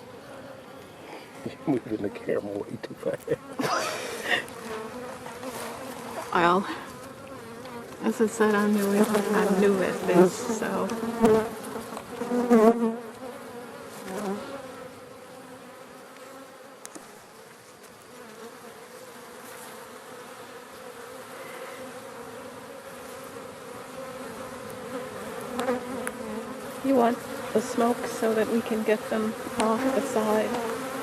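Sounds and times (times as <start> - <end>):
bees buzzing: 0.0 - 31.0.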